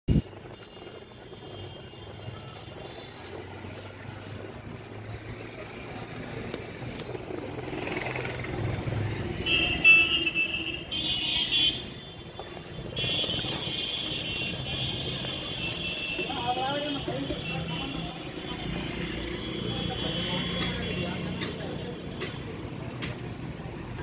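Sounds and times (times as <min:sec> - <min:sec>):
strong gusty wind: 0:00.1 - 0:09.4.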